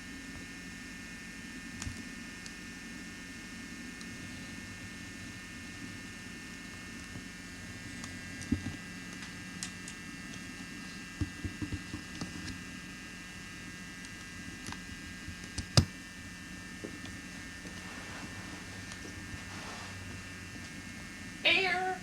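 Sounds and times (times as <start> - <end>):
electrical hum: 0.0 - 22.0
thin high whine: 16.2 - 22.0.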